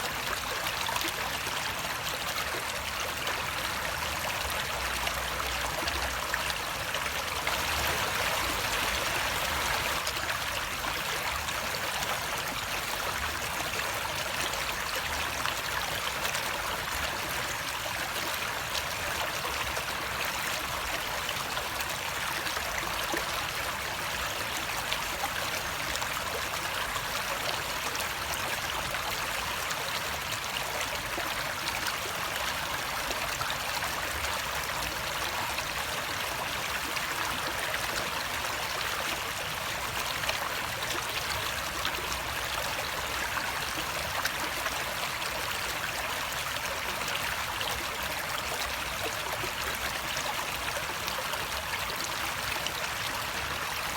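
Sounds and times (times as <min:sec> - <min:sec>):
running water flowing: 0:03.4 - 0:22.9.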